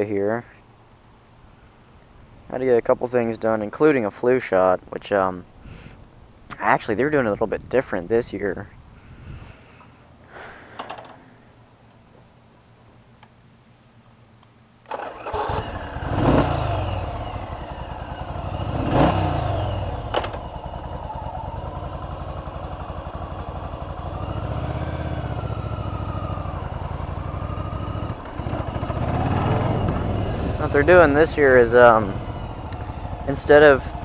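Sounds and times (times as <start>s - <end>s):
motorcycle engine revving and idling: 14.9s - 34.0s.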